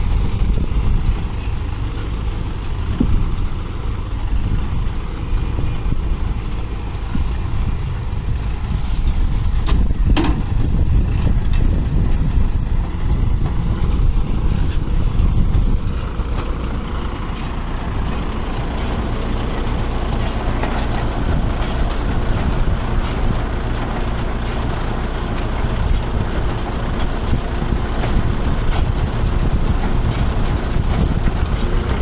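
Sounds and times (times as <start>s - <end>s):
tractor engine running: 0.0s - 32.0s.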